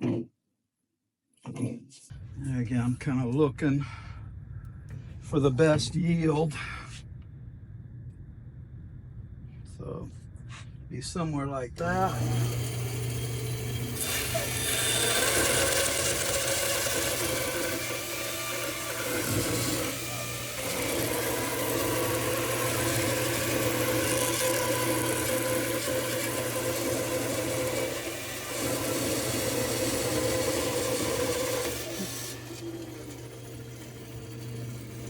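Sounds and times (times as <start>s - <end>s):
bandsaw motor hum: 11.8s - 35.0s
blade cutting wood: 11.8s - 35.0s.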